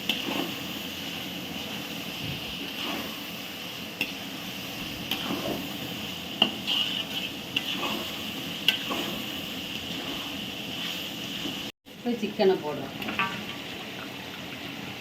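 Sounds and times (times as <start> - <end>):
masala sizzling in oil: 0.0 - 15.0.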